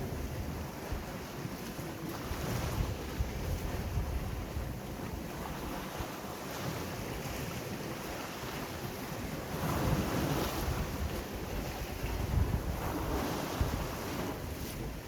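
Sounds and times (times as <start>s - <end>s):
sea waves washing in: 0.0s - 15.0s
wind buffeting microphone: 0.0s - 15.0s.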